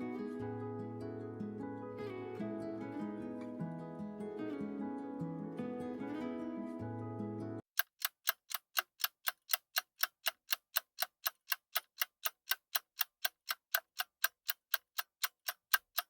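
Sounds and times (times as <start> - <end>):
short guitar music: 0.0 - 7.6
mantel clock ticking: 7.7 - 16.0.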